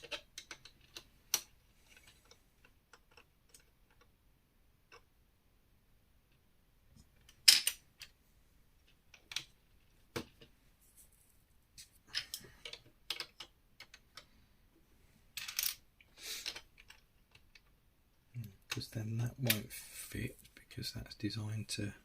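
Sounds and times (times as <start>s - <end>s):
plastic bricks clicking together: 0.0s - 4.1s, 12.2s - 14.3s, 16.4s - 17.7s.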